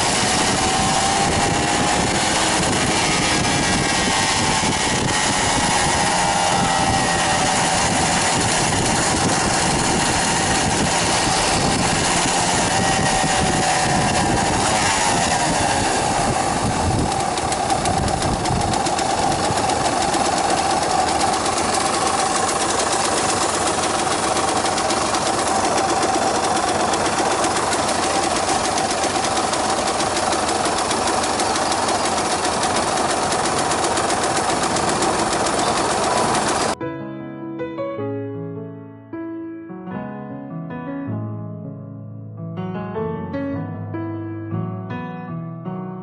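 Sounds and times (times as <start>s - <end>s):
motorcycle engine running: 0.0s - 36.8s
piano music: 36.8s - 46.0s.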